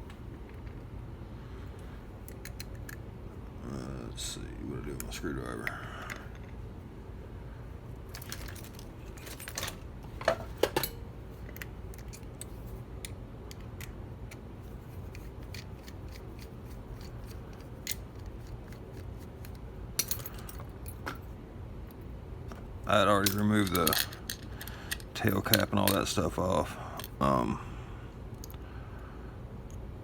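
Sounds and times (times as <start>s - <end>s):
steady low hum: 0.0s - 30.0s
screwdriver clicking and scraping metal: 15.0s - 19.6s.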